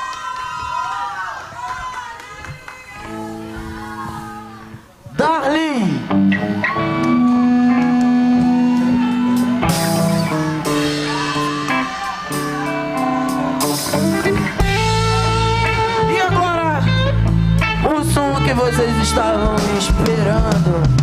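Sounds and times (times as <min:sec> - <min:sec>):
electric guitar bent notes: 0:05.9 - 0:21.0
live rock band playing: 0:05.9 - 0:21.0.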